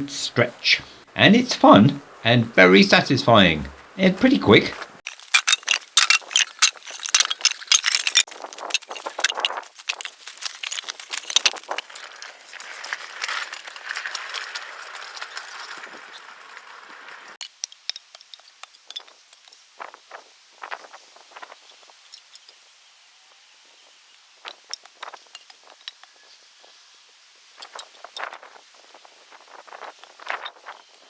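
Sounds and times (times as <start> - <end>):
steady hiss: 0.0 - 5.3
metal clinking and rattling: 5.1 - 15.9.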